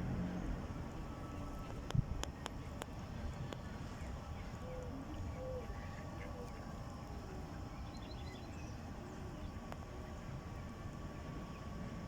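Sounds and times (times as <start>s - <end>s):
faint bird chirps: 3.9s - 10.1s.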